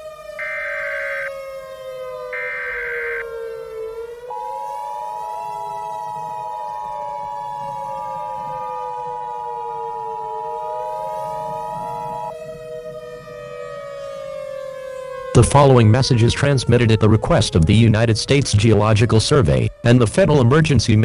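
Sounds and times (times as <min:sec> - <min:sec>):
siren wailing: 0:00.0 - 0:21.0
two-tone attention signal: 0:00.4 - 0:01.4, 0:02.4 - 0:03.2.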